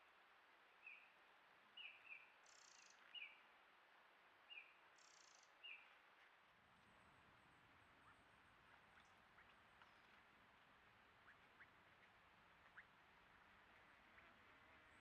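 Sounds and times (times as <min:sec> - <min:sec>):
faint bird chirps: 0:01.8 - 0:03.5, 0:04.5 - 0:06.0, 0:06.9 - 0:10.3, 0:11.1 - 0:13.1.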